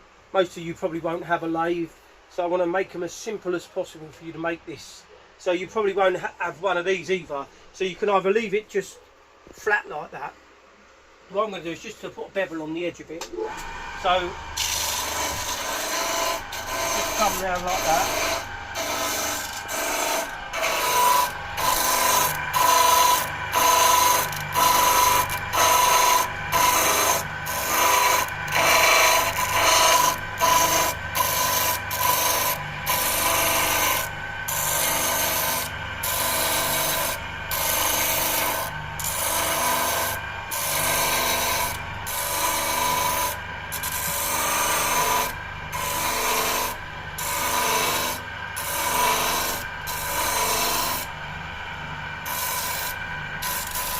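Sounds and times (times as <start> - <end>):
disc sander humming: 13.3 - 53.9
wood grinding on sander disc: 13.4 - 51.2, 52.2 - 53.9.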